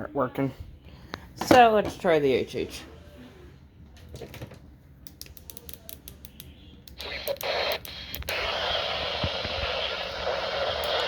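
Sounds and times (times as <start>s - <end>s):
radio static hiss: 7.0s - 11.0s.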